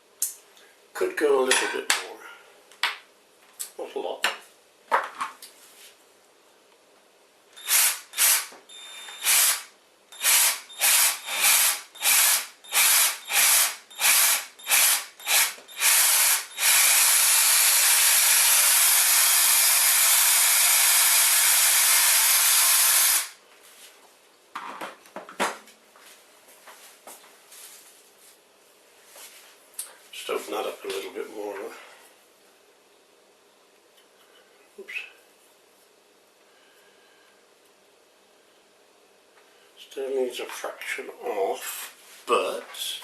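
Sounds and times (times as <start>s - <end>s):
power drill drilling: 7.6s - 23.4s.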